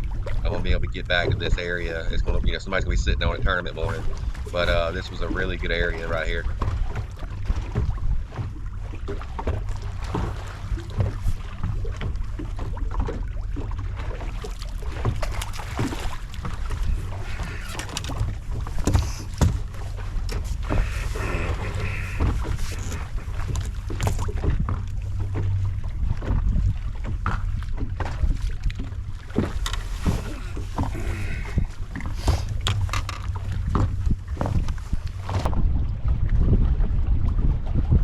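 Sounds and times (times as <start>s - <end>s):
wind on microphone: 0.0s - 13.1s, 14.8s - 38.0s
knocks against boat: 14.9s - 25.6s.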